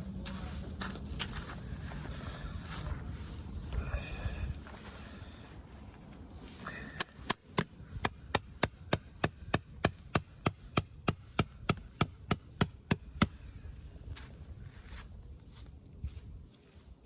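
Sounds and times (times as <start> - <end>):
hammer striking metal tent peg: 7.0 - 13.4.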